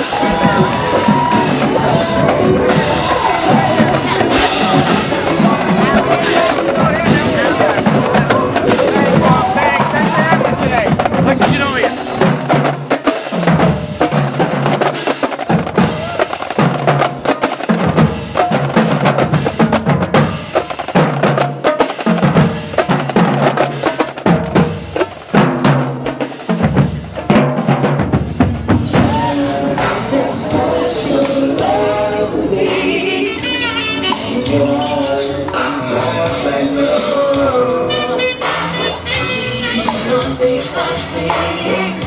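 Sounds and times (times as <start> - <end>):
bass drum pattern: 0.0 - 12.7.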